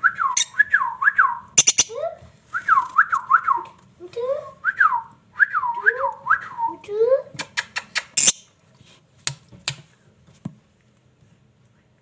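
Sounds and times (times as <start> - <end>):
parrot whistling: 0.0 - 2.0.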